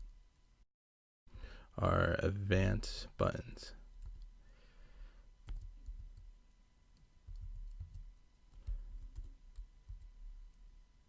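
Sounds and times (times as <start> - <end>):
typing on computer keyboard: 4.0 - 4.3, 5.4 - 6.3, 6.9 - 10.6.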